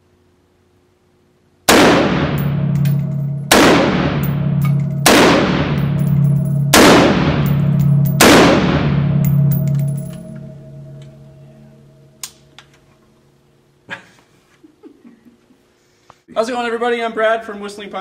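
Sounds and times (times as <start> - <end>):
rifle shots with ringing echo: 1.7 - 11.0
light metallic clinks: 9.2 - 11.2.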